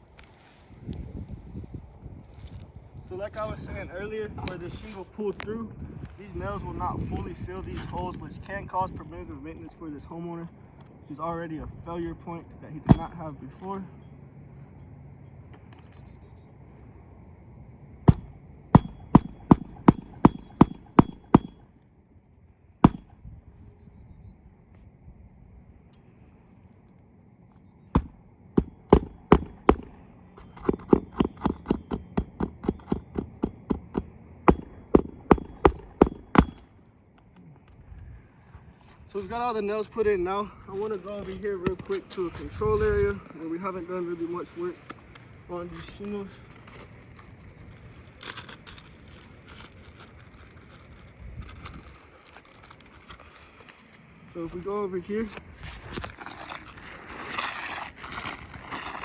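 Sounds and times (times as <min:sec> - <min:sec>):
wind on microphone: 0:00.6 - 0:10.1, 0:22.9 - 0:25.8, 0:40.0 - 0:43.4, 0:50.9 - 0:52.3
hammer driving nails into shingle: 0:12.8 - 0:13.3, 0:18.1 - 0:21.6, 0:22.8 - 0:23.2, 0:28.0 - 0:36.7
heavy low thump: 0:18.0 - 0:21.6.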